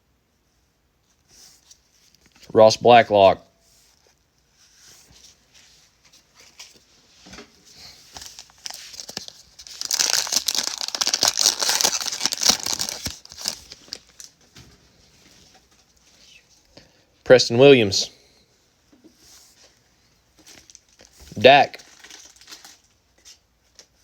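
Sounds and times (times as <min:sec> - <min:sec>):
plastic wrapper tearing and crinkling: 0:08.1 - 0:14.4, 0:20.5 - 0:22.9.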